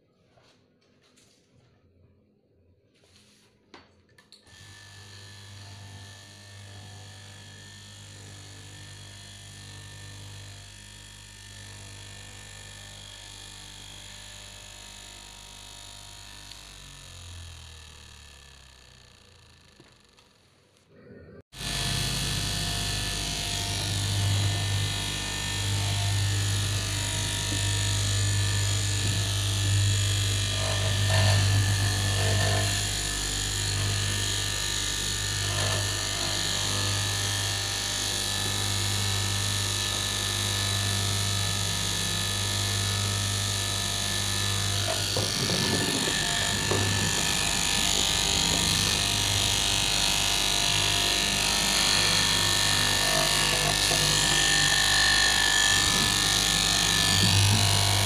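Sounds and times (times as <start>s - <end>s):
cloth-cutting machine running: 4.4s - 20.7s, 21.5s - 58.0s.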